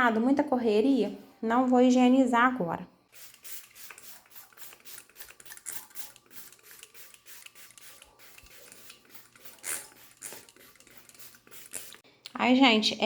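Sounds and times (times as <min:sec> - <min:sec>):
trigger spray bottle hissing: 0:03.1 - 0:12.0.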